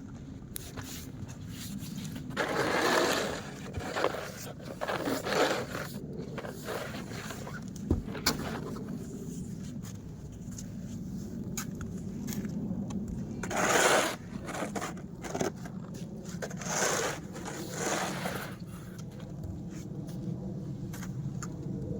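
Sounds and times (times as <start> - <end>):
snow scraping: 2.3 - 7.6, 13.5 - 15.5, 16.5 - 18.8
steady low rumble: 5.7 - 21.9.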